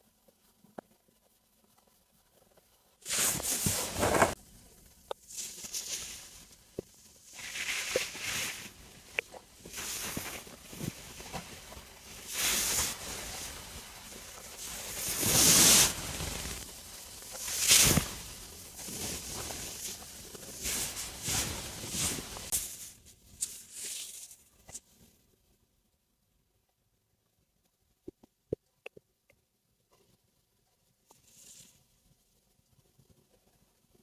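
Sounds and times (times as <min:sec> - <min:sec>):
stomach rumbling and gurgling: 0:00.0 - 0:22.6, 0:27.9 - 0:32.0.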